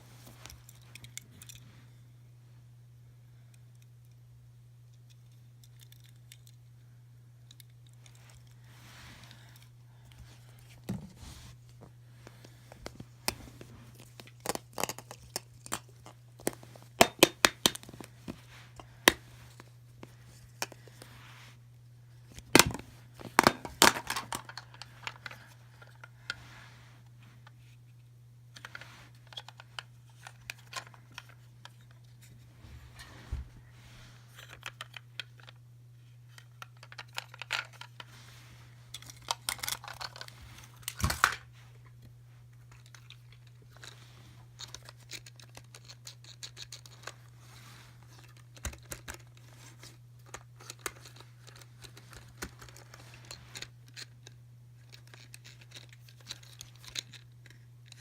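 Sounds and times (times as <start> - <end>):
low electrical hum: 0.0 - 58.0.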